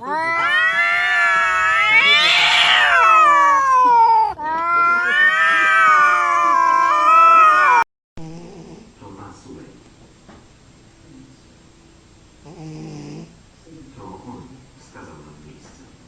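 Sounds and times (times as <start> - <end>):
cat yowling: 0.0 - 7.8.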